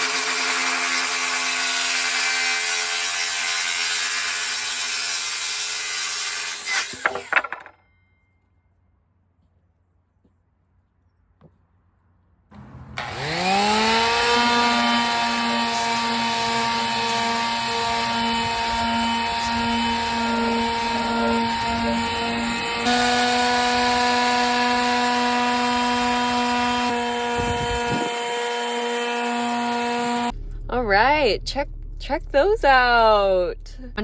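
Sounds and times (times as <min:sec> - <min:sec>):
electric saw motor whining: 0:00.0 - 0:05.4, 0:13.0 - 0:30.3.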